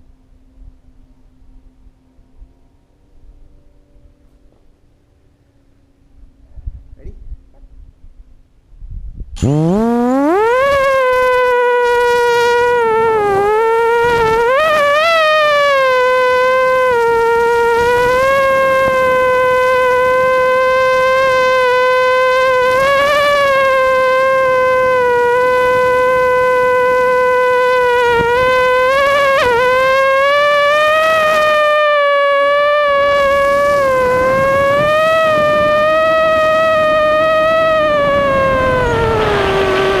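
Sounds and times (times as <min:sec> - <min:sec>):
quadcopter propellers whining: 0:09.4 - 0:40.0.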